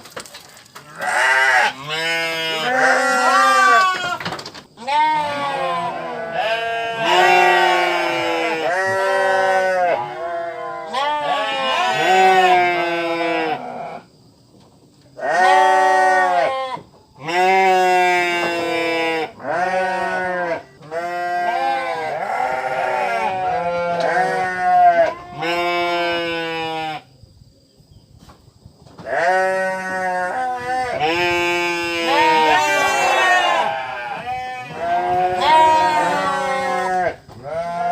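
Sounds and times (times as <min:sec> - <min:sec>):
sheep bleating: 0:00.9 - 0:04.2, 0:04.8 - 0:14.0, 0:17.3 - 0:27.0, 0:29.1 - 0:37.9.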